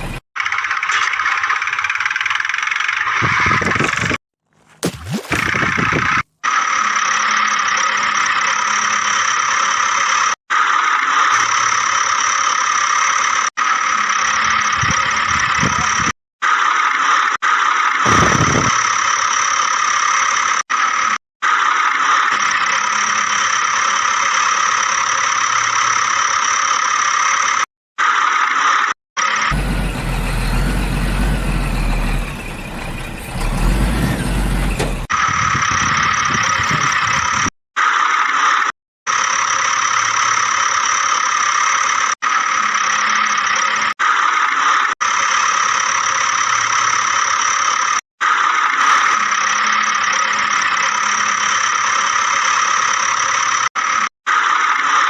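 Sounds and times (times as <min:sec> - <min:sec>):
low rumbling: 0:00.0 - 0:00.2, 0:29.5 - 0:35.1.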